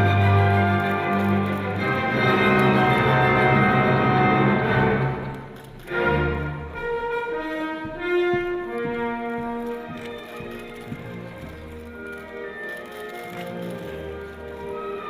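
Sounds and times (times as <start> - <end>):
orchestral music with strings and brass: 0.0 - 15.0.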